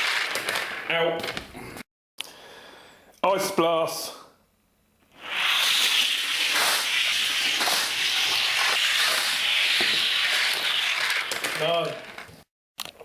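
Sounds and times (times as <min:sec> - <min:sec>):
toy car rolling on track: 0:00.0 - 0:00.9, 0:05.3 - 0:12.4.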